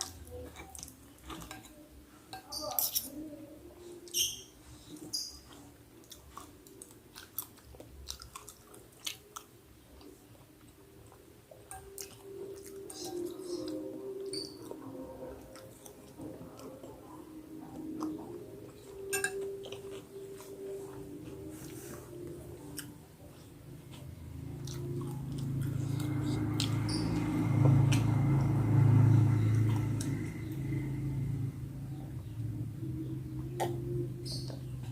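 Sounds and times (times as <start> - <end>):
person chewing close to microphone: 4.8 - 30.2
low droning hum: 10.8 - 34.9.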